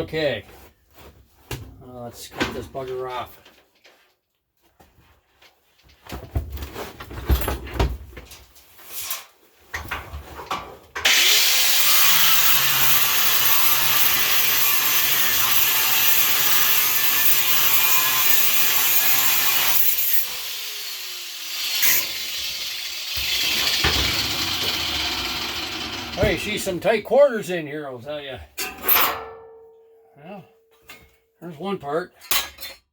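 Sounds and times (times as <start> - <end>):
power cutting tool cutting metal: 11.0 - 26.7.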